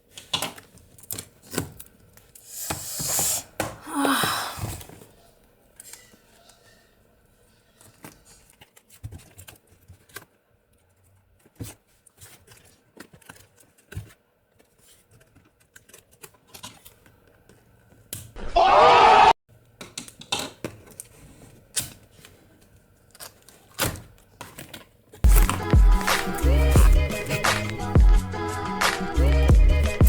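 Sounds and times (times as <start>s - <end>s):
packaging rustling: 22.0s - 28.0s.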